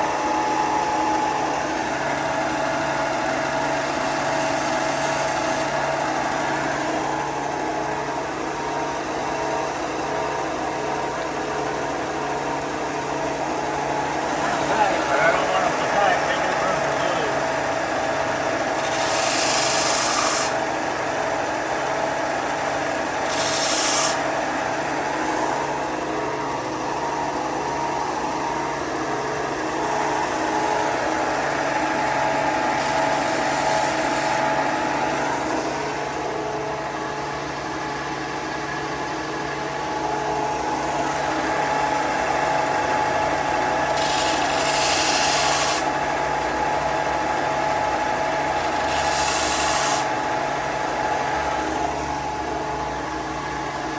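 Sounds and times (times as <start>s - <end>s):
power tool motor whine: 0.0s - 7.6s, 11.4s - 26.3s, 29.5s - 37.1s, 39.7s - 52.4s.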